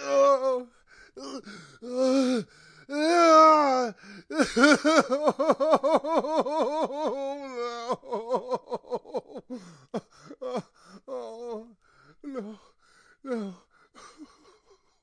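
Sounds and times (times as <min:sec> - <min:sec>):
person sobbing: 0:00.0 - 0:15.0
person wailing: 0:01.9 - 0:09.4.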